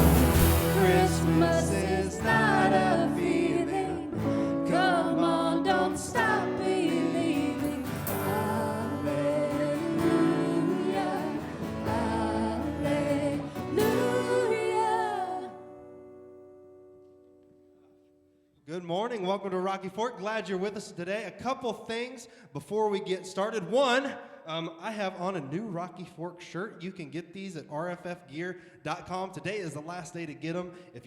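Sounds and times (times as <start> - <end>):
voices singing: 0.0 - 15.6
guitar: 0.0 - 18.6.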